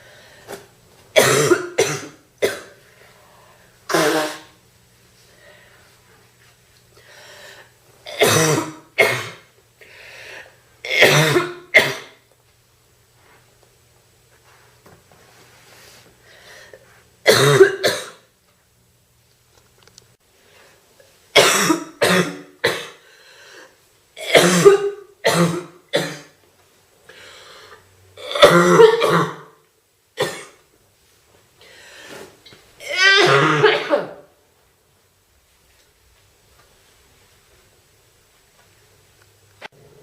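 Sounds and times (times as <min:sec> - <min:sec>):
girl coughing: 0:01.2 - 0:02.8, 0:03.9 - 0:04.6, 0:08.1 - 0:09.5, 0:10.9 - 0:12.2, 0:17.3 - 0:18.3, 0:21.4 - 0:23.0, 0:24.2 - 0:26.4, 0:28.2 - 0:29.6, 0:30.2 - 0:30.6, 0:32.8 - 0:34.3.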